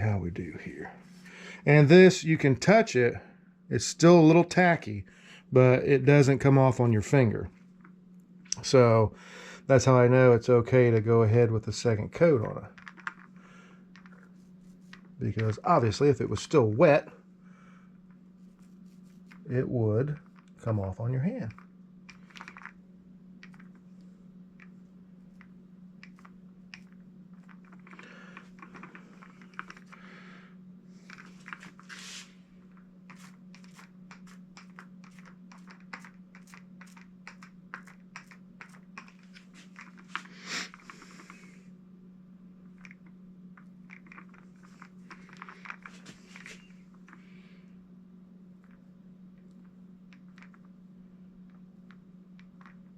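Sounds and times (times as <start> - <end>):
steady low hum: 0.0 - 52.9
paint roller crackling: 24.6 - 30.2, 30.9 - 41.5, 42.7 - 47.2.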